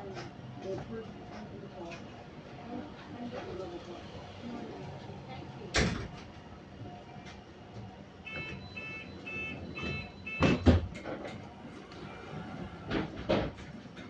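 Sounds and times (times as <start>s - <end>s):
bus door warning beeps: 8.2s - 11.0s
bus doors shutting with thuds: 8.3s - 14.0s.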